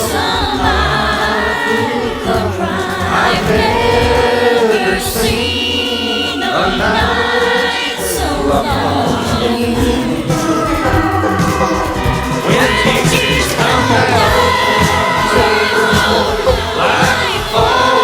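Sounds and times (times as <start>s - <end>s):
choir singing long notes: 0.0s - 18.0s
low bass: 2.0s - 5.8s, 8.4s - 17.8s.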